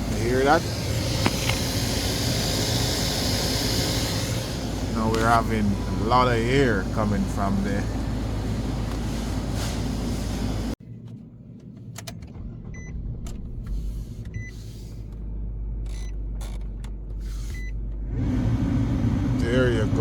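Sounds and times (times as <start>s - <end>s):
air rushing from vents: 0.0s - 10.8s, 18.1s - 20.0s
blower motor running: 0.0s - 10.8s, 17.3s - 20.0s
low hum: 0.0s - 20.0s.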